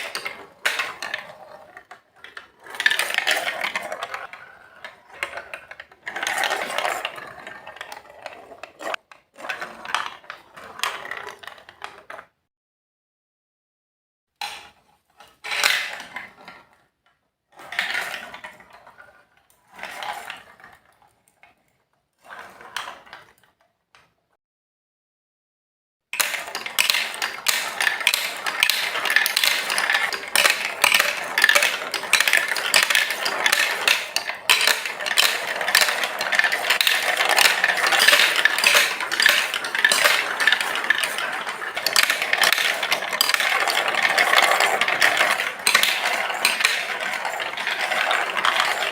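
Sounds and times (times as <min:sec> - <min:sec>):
marbles rattling on plastic track: 0:00.0 - 0:12.2, 0:26.2 - 0:48.9.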